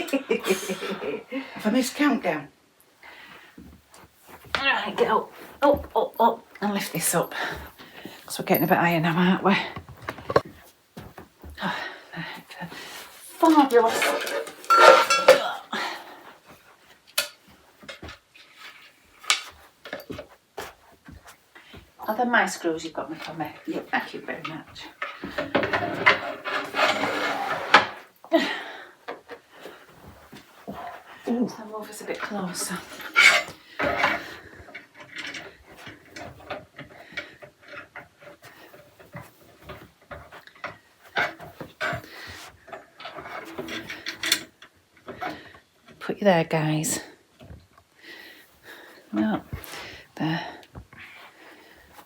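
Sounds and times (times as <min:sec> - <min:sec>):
metal parts clinking and knocking: 0:08.3 - 0:09.2, 0:13.3 - 0:15.6, 0:32.6 - 0:34.2
ringing metal clatter: 0:13.6 - 0:15.6.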